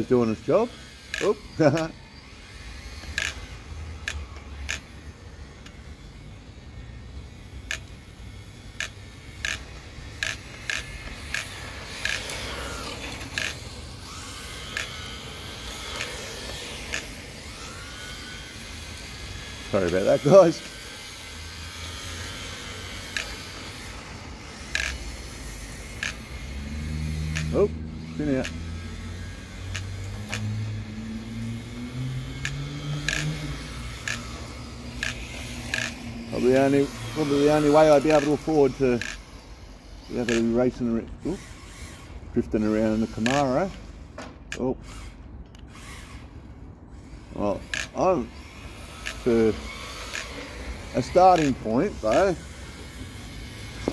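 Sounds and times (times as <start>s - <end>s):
electric motor whining: 0.0s - 53.9s
sharp clicks: 1.1s - 1.9s, 3.0s - 3.4s, 4.0s - 4.9s, 7.6s - 8.0s, 10.2s - 12.4s, 24.7s - 25.0s, 26.0s - 26.2s, 27.3s - 27.5s, 29.7s - 30.5s, 32.4s - 33.4s, 34.0s - 34.3s, 35.0s - 36.0s.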